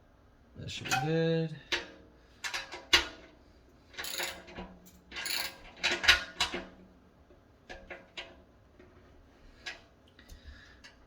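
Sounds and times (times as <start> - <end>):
metal parts clinking and clanking: 4.0 - 6.6.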